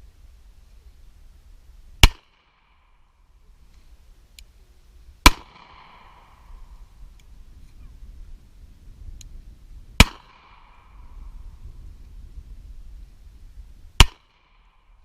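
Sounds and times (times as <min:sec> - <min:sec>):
handgun shots with echo: 0:05.3 - 0:06.4, 0:14.0 - 0:14.6.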